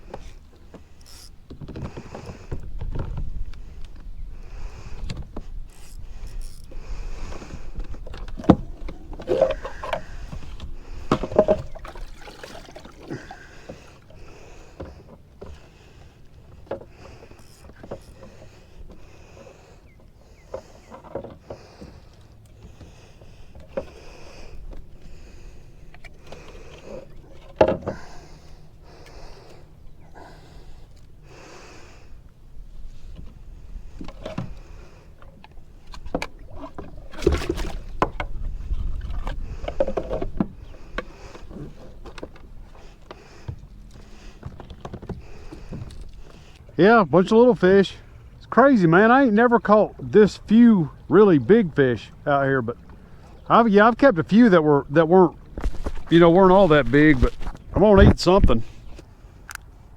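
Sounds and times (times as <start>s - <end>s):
paddle water swishes: 6.0s - 31.8s.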